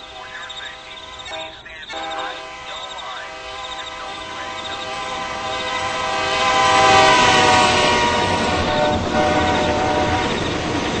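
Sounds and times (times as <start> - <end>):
loud train horn chord: 0.0 - 10.7
train rumble: 0.0 - 11.0.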